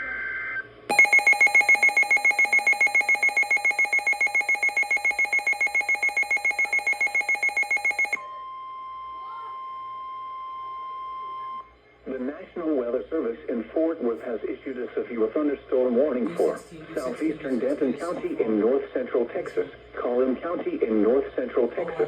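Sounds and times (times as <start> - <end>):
digital header burst: 0.9 - 8.2
electronic alarm beeping rapidly: 0.9 - 8.2
steady warning alarm tone: 0.9 - 8.2.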